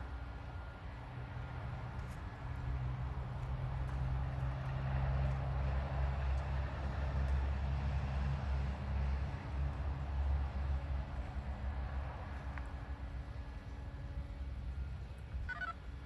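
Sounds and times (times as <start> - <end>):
low engine rumble: 0.0 - 16.0.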